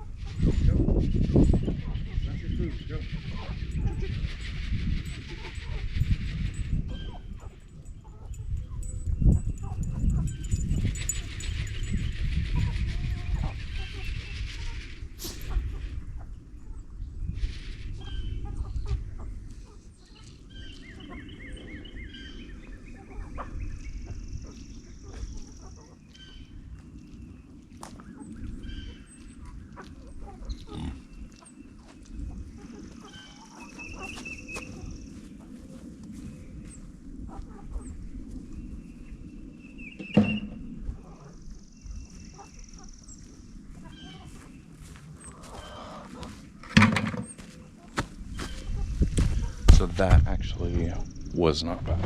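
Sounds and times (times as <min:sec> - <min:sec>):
small birds chirping: 0:00.3 - 0:46.6, 0:47.2 - 0:51.8
chickens clucking: 0:12.3 - 0:16.9, 0:17.9 - 0:36.2, 0:40.1 - 0:52.0
sharp knock: 0:40.0 - 0:40.6
steady low rumble: 0:47.7 - 0:52.0.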